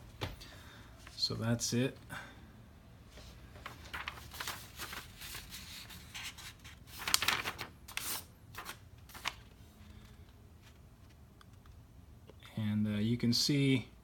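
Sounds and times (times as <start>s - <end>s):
paper rustling and sliding: 3.1s - 11.2s.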